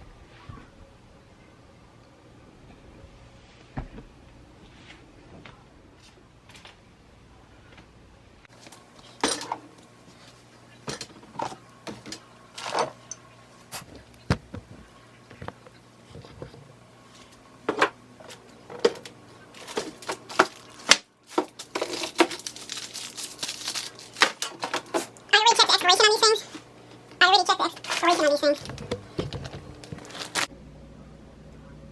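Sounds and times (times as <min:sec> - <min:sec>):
bottles and containers clattering: 0:27.8 - 0:30.4.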